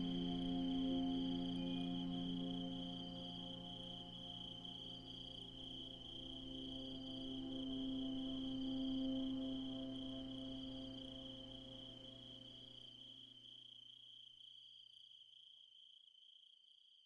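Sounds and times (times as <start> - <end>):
low sustained drone: 0.0 - 4.6
high-pitched insect trill: 0.0 - 11.3.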